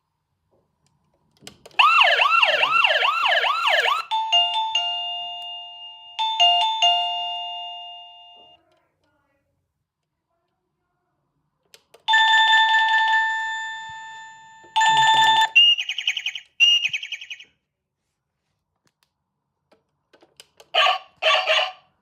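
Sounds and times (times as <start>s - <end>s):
doorbell chime tones: 4.0s - 8.6s, 12.1s - 15.6s
recorded dog-bark chime: 14.6s - 15.5s.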